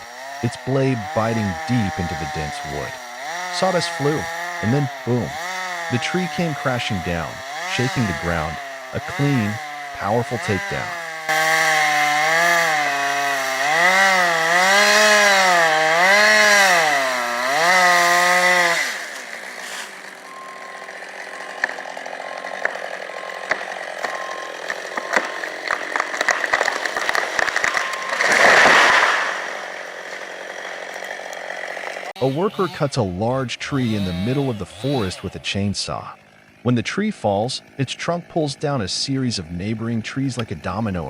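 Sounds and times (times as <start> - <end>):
chainsaw cutting: 0.0 - 41.0
crackling and snapping: 21.6 - 32.1.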